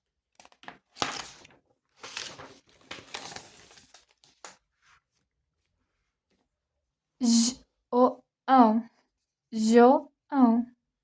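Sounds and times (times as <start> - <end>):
paper rustling and crinkling: 0.4 - 5.2.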